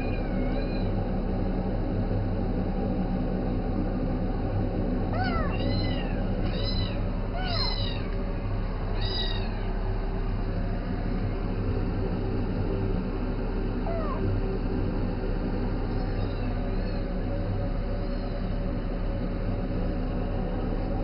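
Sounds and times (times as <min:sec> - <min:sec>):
cat meowing: 0:00.0 - 0:00.9, 0:05.2 - 0:08.1, 0:09.0 - 0:09.7, 0:13.9 - 0:14.2, 0:16.0 - 0:17.0
steady low hum: 0:00.0 - 0:21.0.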